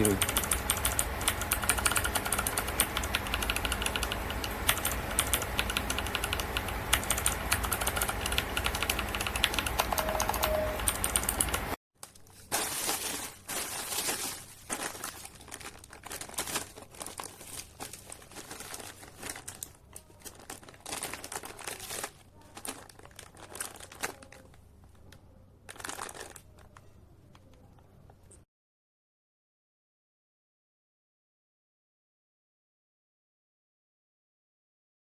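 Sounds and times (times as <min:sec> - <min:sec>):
crinkling and rustling handling: 0:12.0 - 0:28.4.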